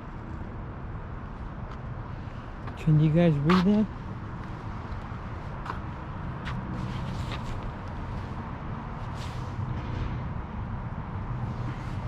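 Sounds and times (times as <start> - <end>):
footsteps on a trail: 2.6 - 8.4.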